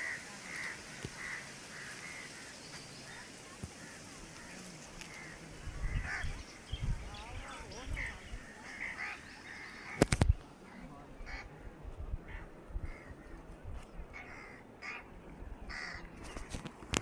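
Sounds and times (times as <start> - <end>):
crows cawing: 0.0 - 6.4, 8.0 - 10.1, 12.2 - 13.3, 14.1 - 15.1, 15.7 - 16.5.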